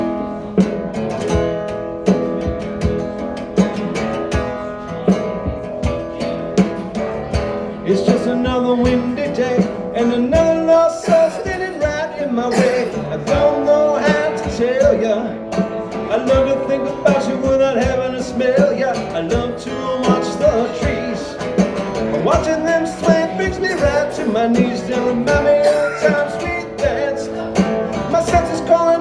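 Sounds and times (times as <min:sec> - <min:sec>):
guitar strummed: 0:00.0 - 0:29.0.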